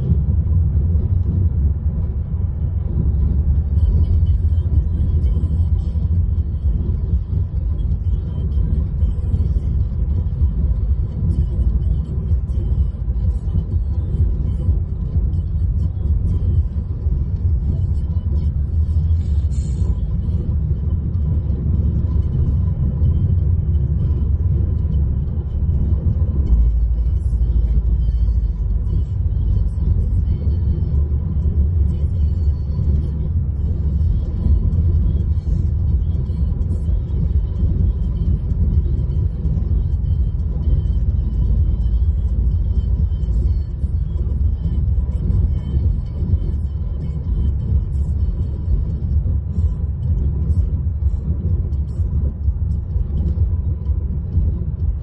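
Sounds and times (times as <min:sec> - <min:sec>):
road rumble inside car: 0:00.0 - 0:55.0.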